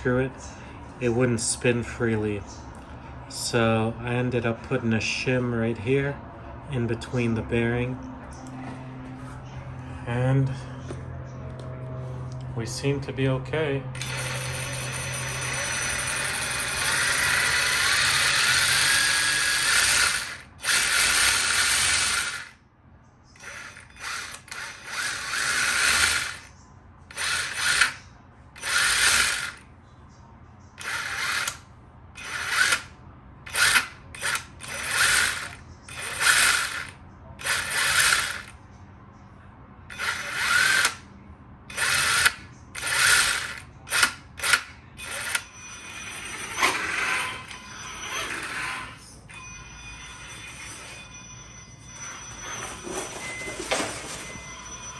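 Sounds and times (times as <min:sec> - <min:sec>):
toy truck electric motor whirring: 0:14.0 - 0:22.6, 0:23.3 - 0:26.5, 0:27.1 - 0:28.0, 0:28.6 - 0:29.6, 0:30.8 - 0:31.6, 0:32.2 - 0:38.6, 0:39.9 - 0:41.0, 0:41.7 - 0:51.2.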